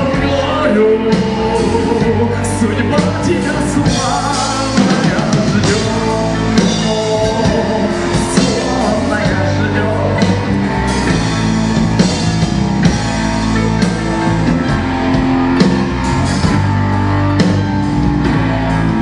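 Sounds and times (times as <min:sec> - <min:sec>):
person singing: 0:00.0 - 0:11.2
drum kit: 0:00.0 - 0:19.0
guitar: 0:00.0 - 0:19.0
live rock band playing: 0:00.0 - 0:19.0.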